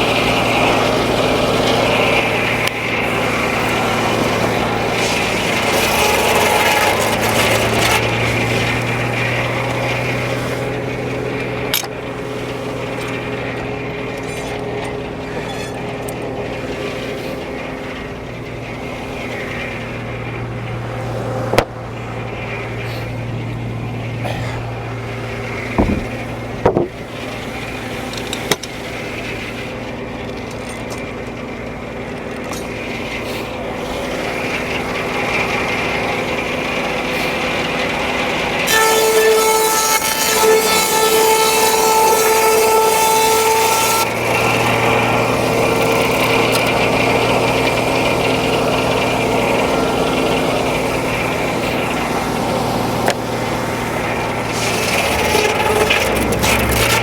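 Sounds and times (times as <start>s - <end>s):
saw blade cutting log: 0.0s - 18.1s, 24.2s - 57.0s
sawmill power unit humming: 0.0s - 57.0s
sharp knocks: 25.8s - 27.0s.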